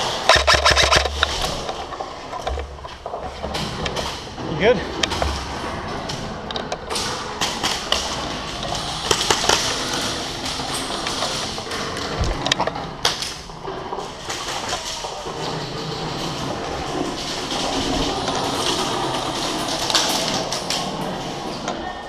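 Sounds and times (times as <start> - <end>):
airsoft guns firing: 0.0 - 1.7, 7.1 - 10.5
pellets striking: 0.0 - 1.7, 7.0 - 11.6
steady background din: 0.0 - 22.0.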